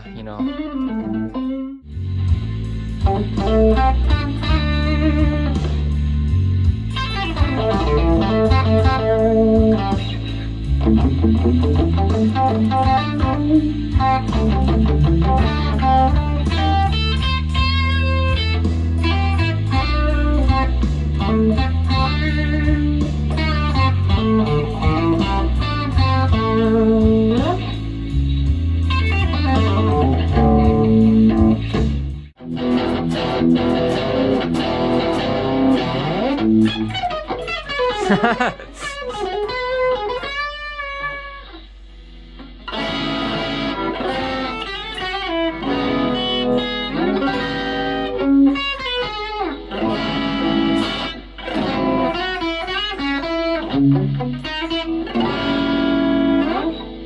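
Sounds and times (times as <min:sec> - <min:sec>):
low bass notes: 0:00.0 - 0:37.0
electric guitar melody: 0:00.0 - 0:57.0.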